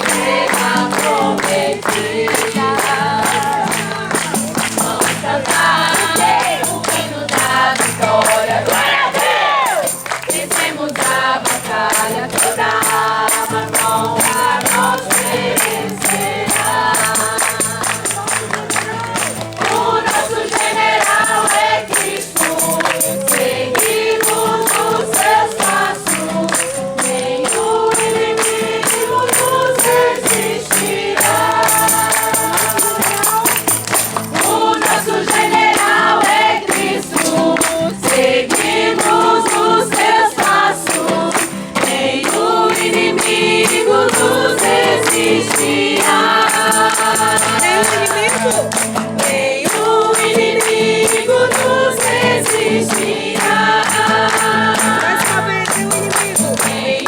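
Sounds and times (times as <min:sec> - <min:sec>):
group singing a praise song: 0:00.0 - 0:57.0
steady rhythmic beat: 0:07.5 - 0:26.5, 0:27.2 - 0:53.4.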